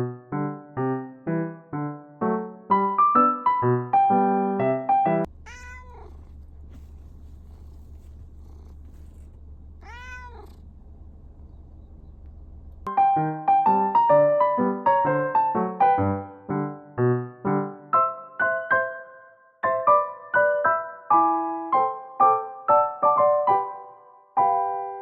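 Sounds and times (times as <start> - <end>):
piano music: 0.0 - 5.3, 12.9 - 25.0
steady low hum: 5.3 - 12.9
kitten meowing: 5.4 - 10.6.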